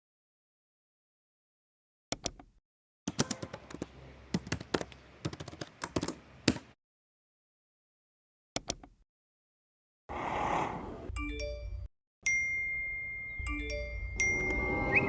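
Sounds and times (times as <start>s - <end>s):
sharp clicks and taps: 3.1s - 6.8s.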